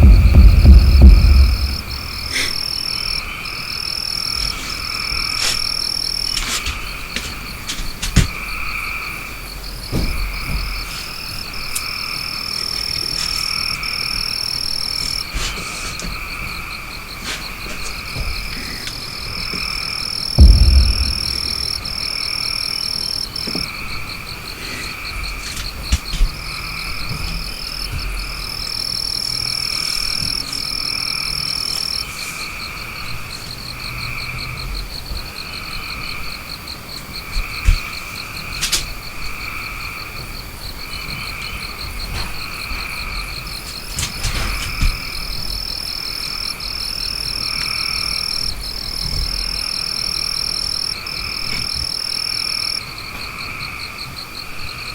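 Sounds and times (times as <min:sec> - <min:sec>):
high steady whine: 0:00.0 - 0:02.6, 0:20.4 - 0:22.2
short knocks: 0:00.0 - 0:02.6, 0:20.4 - 0:22.2
frogs croaking: 0:00.0 - 0:54.9.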